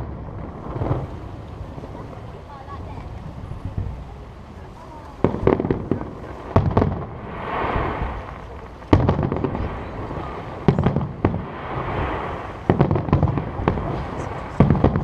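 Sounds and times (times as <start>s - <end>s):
firework shells bursting: 5.1s - 15.0s.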